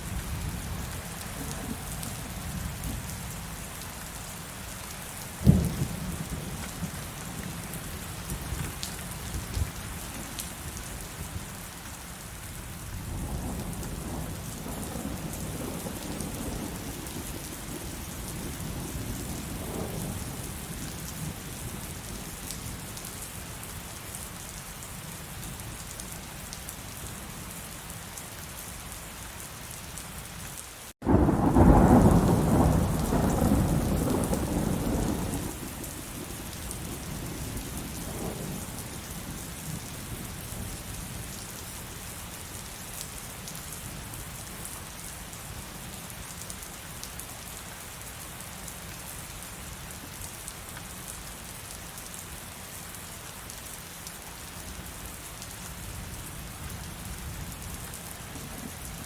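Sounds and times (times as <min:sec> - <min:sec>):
heavy rain: 0:00.0 - 0:59.0
thunderclap rumbling: 0:31.0 - 0:36.3.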